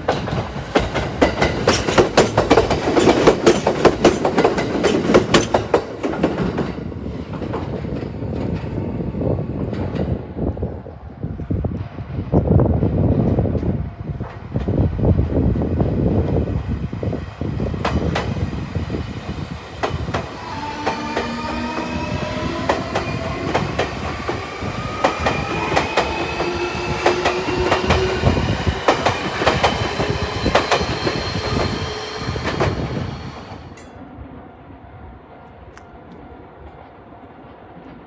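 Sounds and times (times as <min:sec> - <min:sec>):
train wheels clicking over rail joints: 0:00.0 - 0:08.8, 0:19.8 - 0:34.0.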